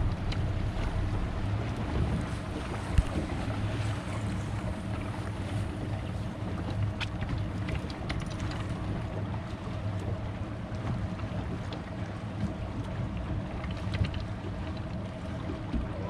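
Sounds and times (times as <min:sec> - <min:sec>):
wind buffeting microphone: 0:00.0 - 0:06.0
boat motor running: 0:00.0 - 0:16.0
water around hull: 0:00.0 - 0:16.0.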